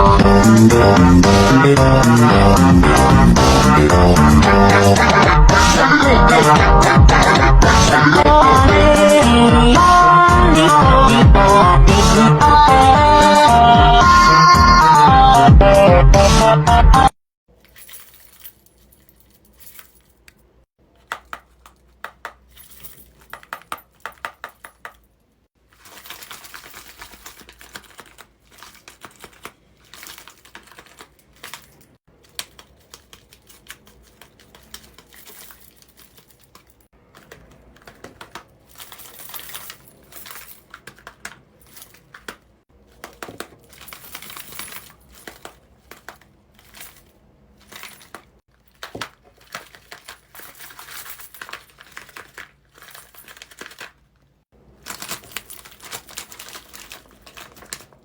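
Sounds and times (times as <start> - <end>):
paper crinkling and rustling: 25.6 - 58.0.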